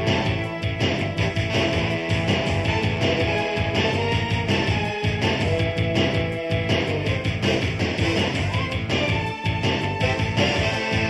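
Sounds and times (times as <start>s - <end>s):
bass and drum beat: 0.0s - 11.0s.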